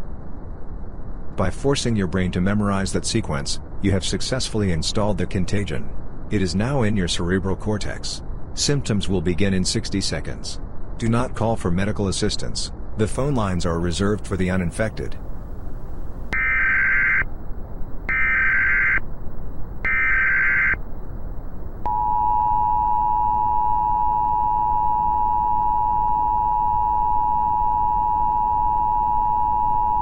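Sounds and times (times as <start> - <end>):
warbling data tone bursts: 16.3 - 30.0
two-tone attention signal: 19.9 - 20.8, 21.9 - 30.0.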